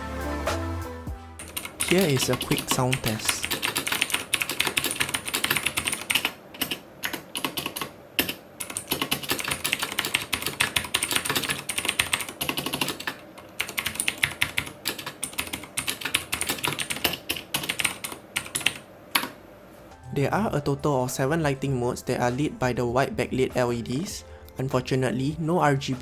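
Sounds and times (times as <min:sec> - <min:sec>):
mechanical keyboard typing: 0:01.4 - 0:19.4.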